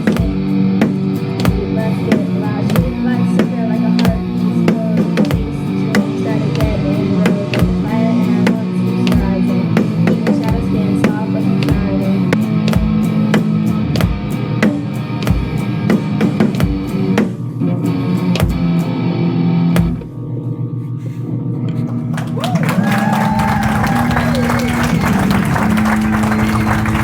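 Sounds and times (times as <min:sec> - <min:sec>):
drum kit beat: 0:00.0 - 0:19.1, 0:19.8 - 0:20.2, 0:22.4 - 0:27.0
guitar chords: 0:00.0 - 0:27.0
keyboard chords: 0:00.0 - 0:27.0.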